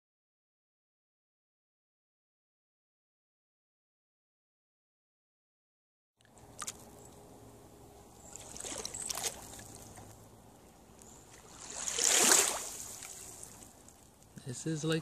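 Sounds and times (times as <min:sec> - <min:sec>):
small waves washing ashore: 0:08.2 - 0:10.1, 0:11.2 - 0:14.0.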